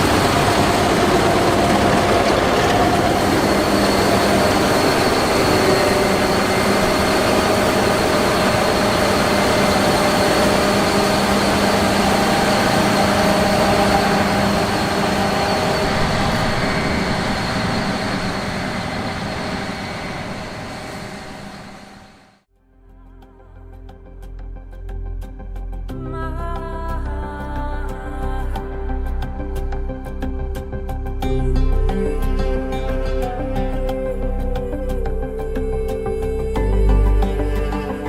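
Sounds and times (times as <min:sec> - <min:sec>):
combine harvester running: 0:00.0 - 0:22.4
machine whining: 0:00.0 - 0:22.4.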